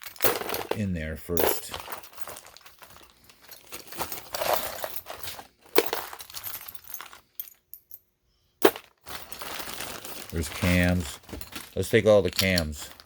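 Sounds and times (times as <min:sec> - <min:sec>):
metal parts clinking and rattling: 0:00.0 - 0:13.0.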